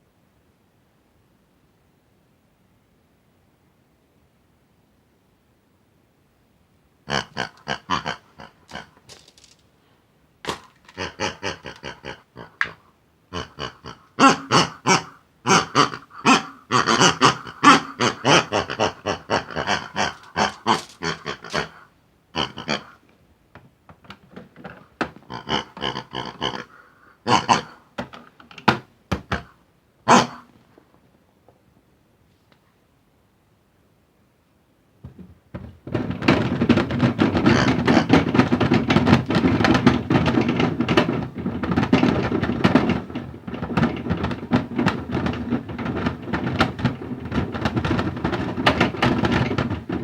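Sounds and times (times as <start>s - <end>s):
pig-like grunting and oinking: 7.1s - 9.0s, 10.5s - 23.0s, 24.7s - 27.9s, 29.3s - 30.5s, 35.9s - 50.0s.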